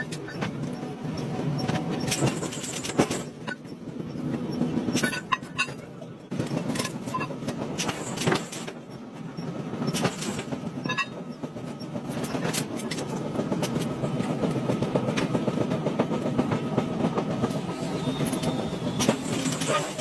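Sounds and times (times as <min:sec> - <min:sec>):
metal clanking and clinking: 0:19.0 - 0:20.0.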